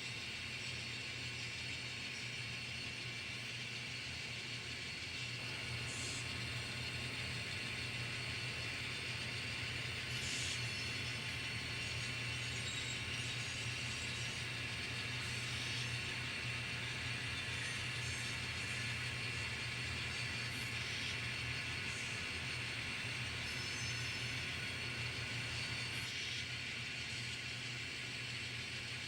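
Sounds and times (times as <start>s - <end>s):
model train rolling on track: 4.9s - 26.1s.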